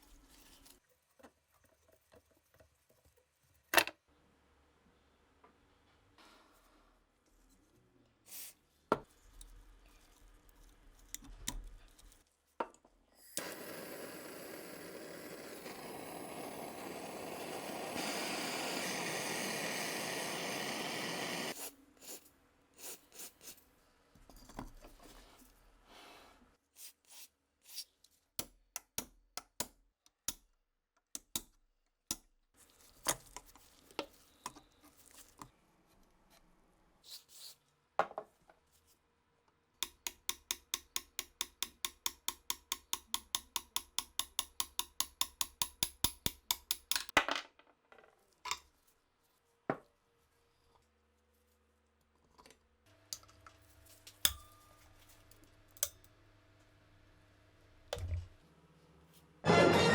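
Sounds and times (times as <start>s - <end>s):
steady hiss: 13.4s - 21.6s
metal parts clicking and tapping: 39.8s - 47.2s.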